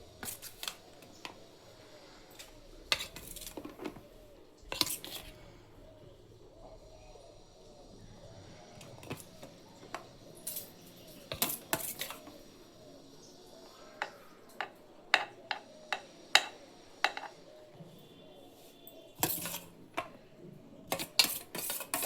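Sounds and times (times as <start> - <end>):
utensil scraping: 0.0 - 1.4, 2.0 - 5.6, 8.8 - 12.5, 18.6 - 20.2, 20.9 - 22.0
utensil clinking against a dish: 2.4 - 4.1, 4.7 - 5.4, 8.8 - 12.7, 13.6 - 17.6, 18.9 - 20.2, 20.9 - 22.0.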